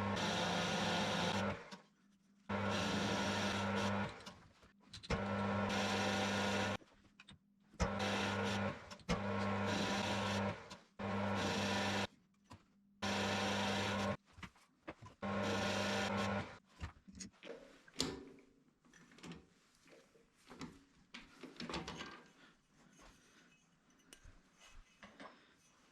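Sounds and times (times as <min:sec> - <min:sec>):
electric power tool motor whirring: 0:00.0 - 0:01.7, 0:02.5 - 0:04.3, 0:05.1 - 0:06.8, 0:07.8 - 0:12.1, 0:13.0 - 0:14.2, 0:15.2 - 0:16.6.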